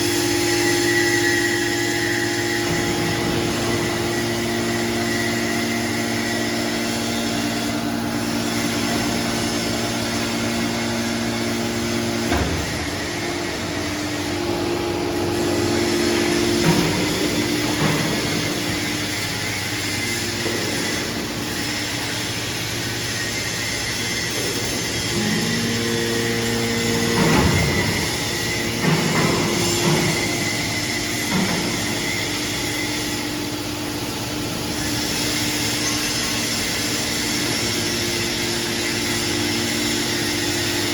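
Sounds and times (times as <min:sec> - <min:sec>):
metal clanks and knocks: 0:15.8 - 0:19.6, 0:24.4 - 0:32.3
baler machine hum: 0:23.8 - 0:35.4.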